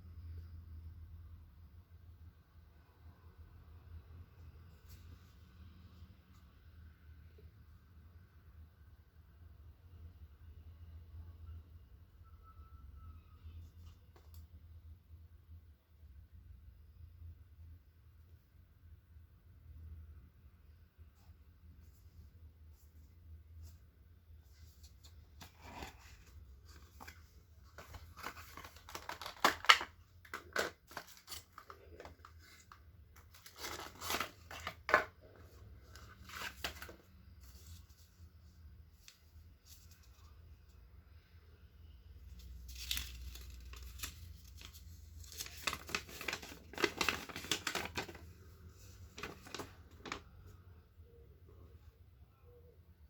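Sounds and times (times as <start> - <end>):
packaging tearing and crinkling: 27.8 - 32.1, 42.7 - 48.2.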